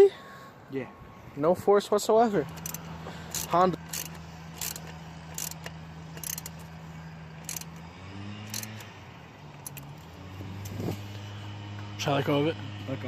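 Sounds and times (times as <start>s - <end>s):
car parts clicking and rattling: 2.2s - 11.1s.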